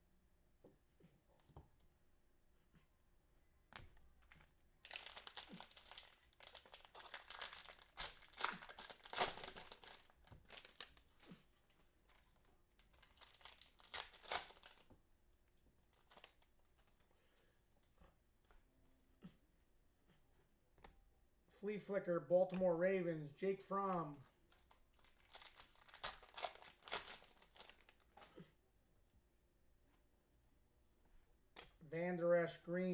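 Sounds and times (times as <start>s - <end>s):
cellophane wrapper crinkling and tearing: 4.2s - 14.9s, 15.9s - 17.0s, 23.8s - 28.3s.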